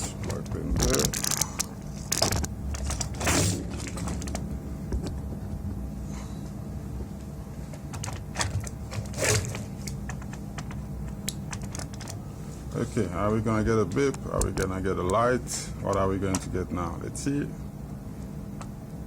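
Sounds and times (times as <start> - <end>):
steady low hum: 0.0 - 19.0
clicks and knocks of handling: 7.7 - 12.2.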